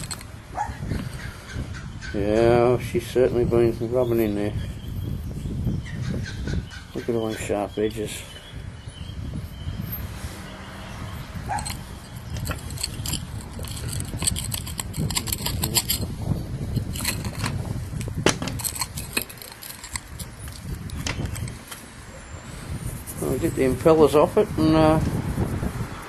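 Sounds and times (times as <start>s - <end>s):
metal parts and tools clinking: 0.0s - 1.3s, 11.5s - 21.8s.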